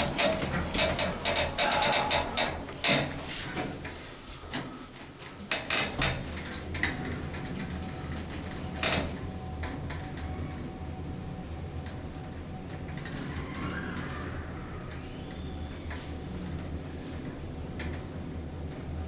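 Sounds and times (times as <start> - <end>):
lift motor humming: 0.0 - 3.9.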